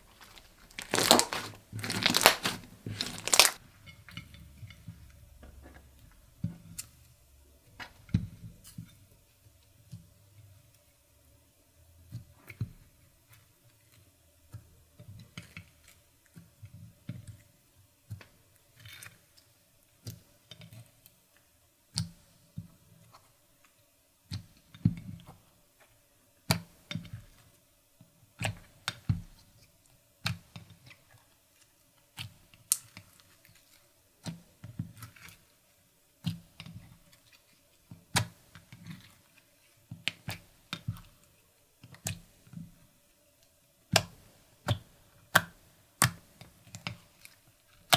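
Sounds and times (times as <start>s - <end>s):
soft low squishing: 0.0s - 3.6s
slime clicking and popping: 0.1s - 3.6s.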